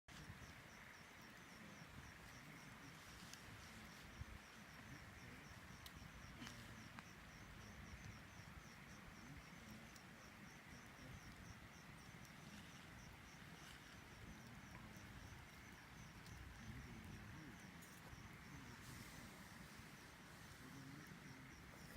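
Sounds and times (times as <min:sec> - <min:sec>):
insect chirping: 0:00.1 - 0:21.9.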